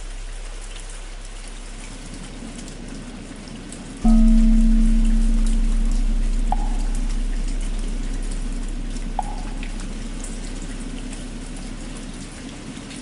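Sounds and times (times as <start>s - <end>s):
steady rain: 0.0s - 13.0s
large bell hum: 4.0s - 13.0s.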